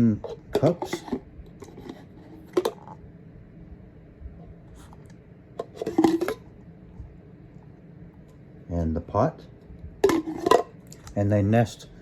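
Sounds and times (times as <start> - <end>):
cups and metal pot clattering: 0.2 - 3.0, 5.6 - 6.4, 10.0 - 10.8.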